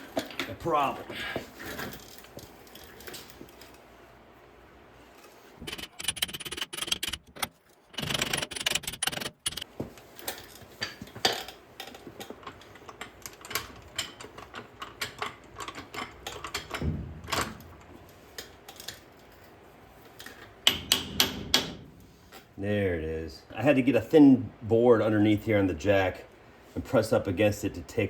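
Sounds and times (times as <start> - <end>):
quick clicks: 5.6 - 9.6.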